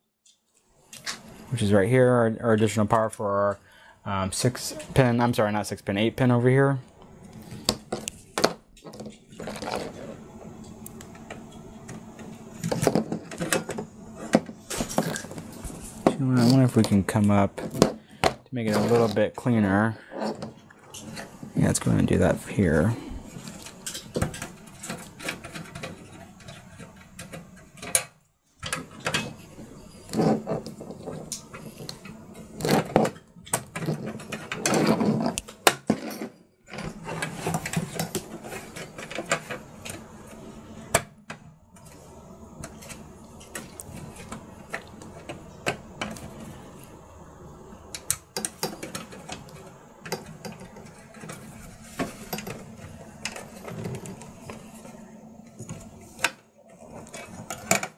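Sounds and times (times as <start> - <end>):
cables and plastic parts rattling: 7.4 - 19.5, 20.2 - 40.4, 48.0 - 57.9.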